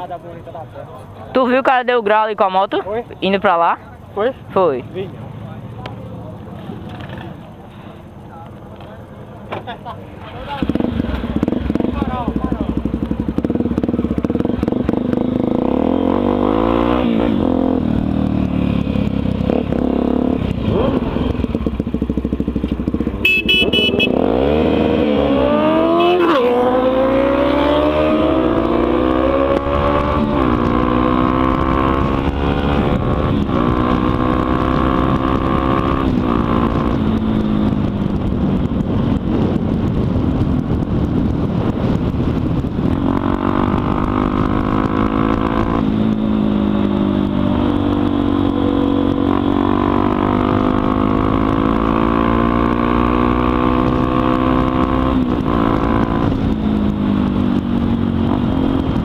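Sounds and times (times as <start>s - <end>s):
motorcycle engine accelerating: 9.6s - 59.0s
sharp high-pitched toot: 23.2s - 24.3s.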